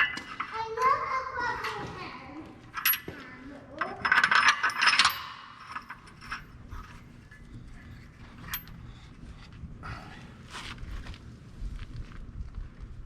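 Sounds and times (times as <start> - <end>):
metal parts clinking and rattling: 0.0 - 1.0, 2.7 - 8.9.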